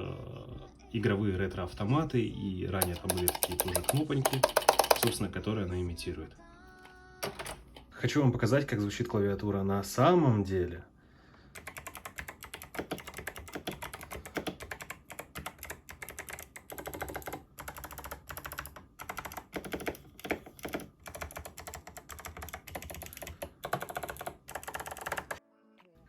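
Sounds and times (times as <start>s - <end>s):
mechanical keyboard typing: 2.8s - 5.2s, 7.2s - 7.9s, 11.6s - 25.4s.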